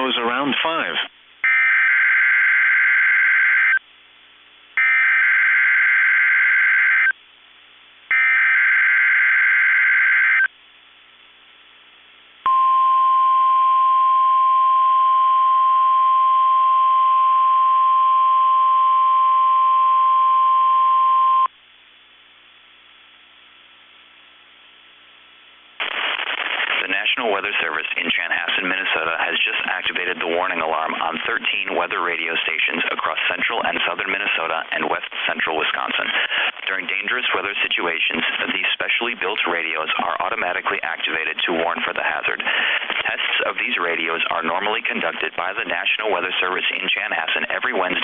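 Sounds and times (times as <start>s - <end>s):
steady high alarm tone: 8.1s - 10.5s.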